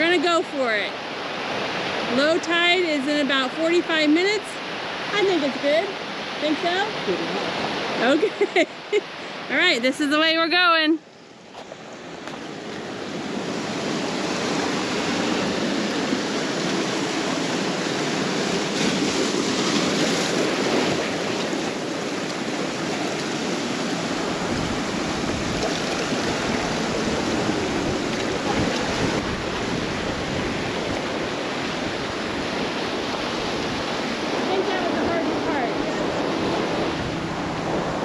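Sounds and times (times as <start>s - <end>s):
ocean surf breaking: 0.0s - 10.8s, 11.4s - 38.0s
wind rumble on microphone: 12.8s - 38.0s.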